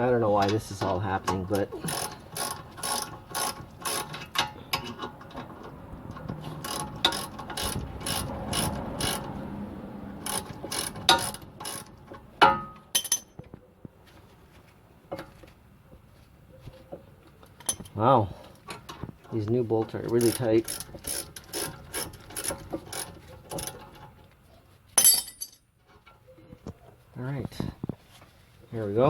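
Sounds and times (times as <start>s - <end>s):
metal clank: 12.4s - 13.4s.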